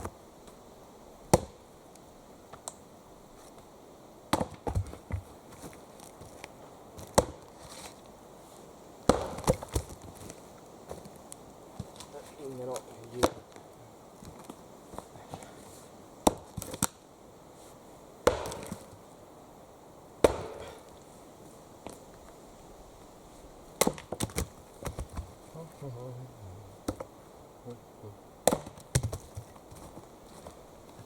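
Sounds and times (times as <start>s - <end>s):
axe chopping wood: 1.3s - 1.6s, 4.3s - 5.0s, 7.0s - 7.5s, 9.0s - 9.9s, 13.2s - 13.4s, 16.2s - 17.0s, 18.2s - 18.9s, 20.2s - 20.8s, 23.8s - 25.2s, 28.4s - 29.4s.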